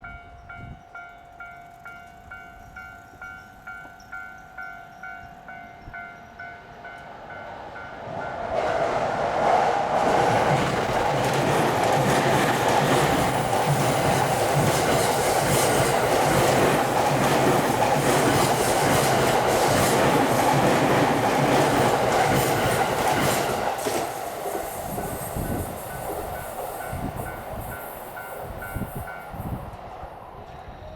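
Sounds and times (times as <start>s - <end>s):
electric train running: 8.4s - 29.6s
wheels clacking over rail joints: 9.8s - 24.5s.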